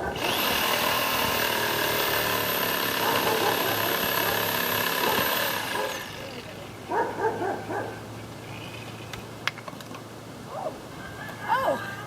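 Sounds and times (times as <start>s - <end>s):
electric saw cutting wood: 0.0s - 6.4s.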